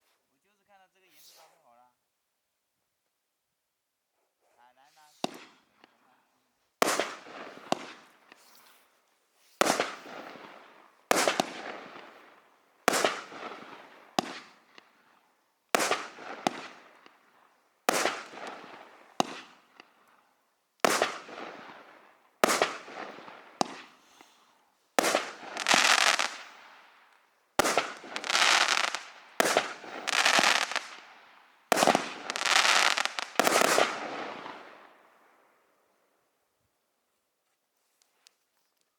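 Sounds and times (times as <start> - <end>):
firework bangs with crackle: 5.1 - 5.9, 6.8 - 8.8, 9.4 - 35.1.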